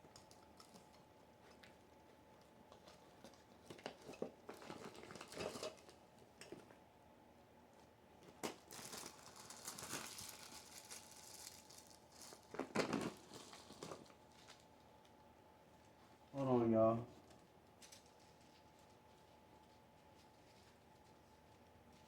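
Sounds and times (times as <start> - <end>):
packaging crinkling and rustling: 2.7 - 6.7, 8.2 - 15.1.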